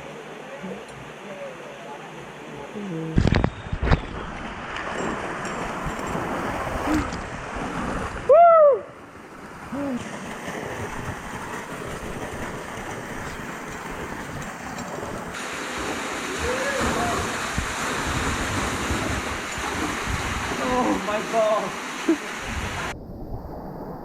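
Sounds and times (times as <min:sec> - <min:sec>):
rushing water: 0:00.0 - 0:24.0
person shouting: 0:16.4 - 0:17.3.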